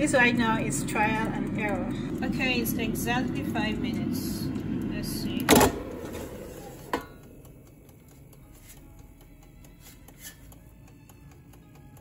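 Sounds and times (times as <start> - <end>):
sharp timer clicks: 7.2 - 12.0
wind-up dial timer ticking: 7.2 - 12.0.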